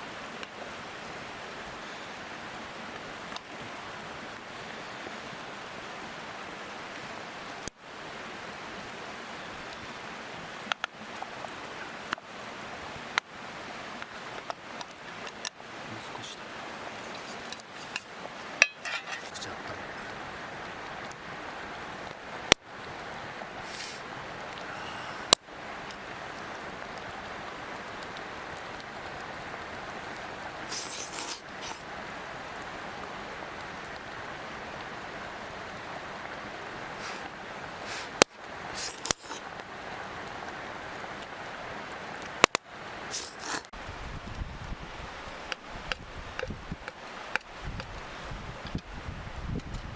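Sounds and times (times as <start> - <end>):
mountain stream rushing: 0.0 - 49.9
sharp clicks and clinks: 18.6 - 19.4.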